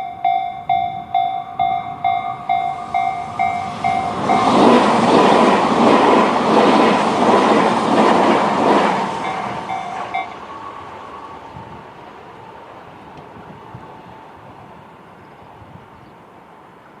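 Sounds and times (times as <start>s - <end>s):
crossing warning bell: 0.0s - 5.2s, 9.2s - 10.9s
train wheels clattering: 0.0s - 10.5s.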